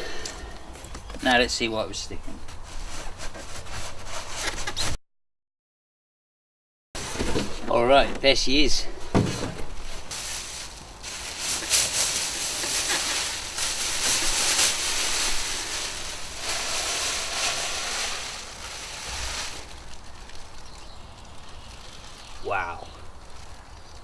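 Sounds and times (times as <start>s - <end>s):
cardboard packaging rustling: 9.1s - 24.0s.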